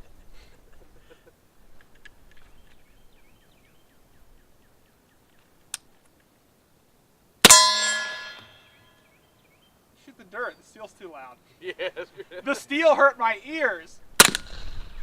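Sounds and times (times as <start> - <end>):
steel target ringing clang: 7.4 - 9.0
suppressed pistol shot: 14.2 - 14.8.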